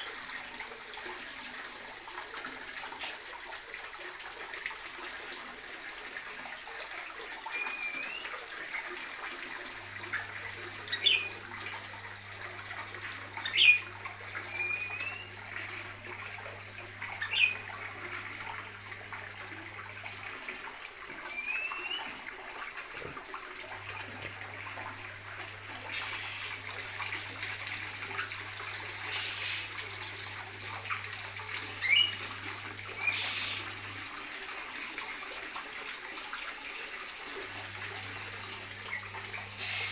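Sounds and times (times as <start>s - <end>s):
small birds chirping: 10.8s - 11.4s, 13.4s - 13.9s, 14.5s - 15.3s, 17.2s - 17.6s, 31.8s - 32.2s.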